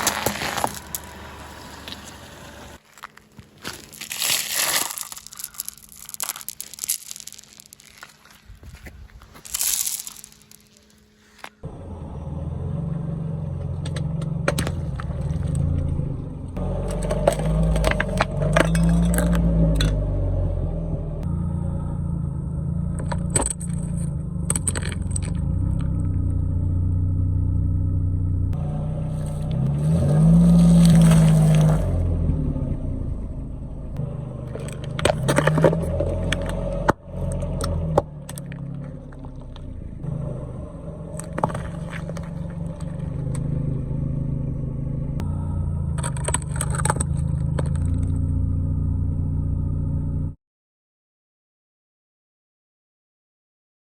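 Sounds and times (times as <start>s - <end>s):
cracks and snaps under tyres: 0.0s - 11.6s, 13.6s - 20.0s, 22.8s - 26.4s, 29.2s - 32.1s, 34.0s - 40.3s, 40.9s - 44.3s, 45.2s - 48.4s
car engine running: 3.7s - 50.4s.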